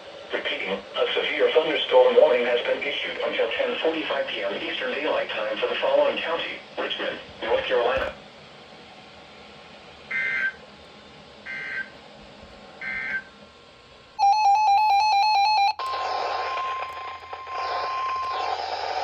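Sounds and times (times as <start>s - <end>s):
radio static: 0.3s - 8.2s, 15.8s - 19.0s
shrill electronic squawks: 14.2s - 19.0s.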